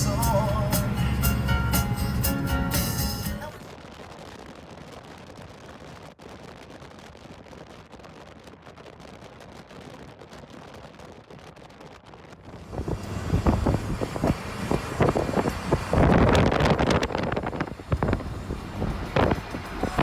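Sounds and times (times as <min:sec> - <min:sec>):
steady low rumble: 0:00.0 - 0:08.2, 0:12.3 - 0:20.0
gusty wind buffeting microphone: 0:03.6 - 0:20.0.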